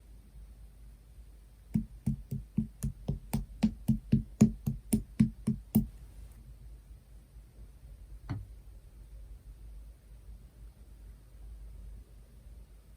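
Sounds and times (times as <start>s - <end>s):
light taps: 1.8s - 5.9s.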